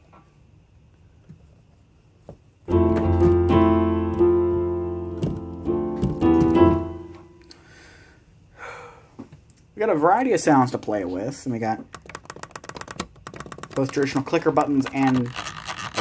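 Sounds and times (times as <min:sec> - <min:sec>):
digital piano sustained chords: 0:02.7 - 0:07.5.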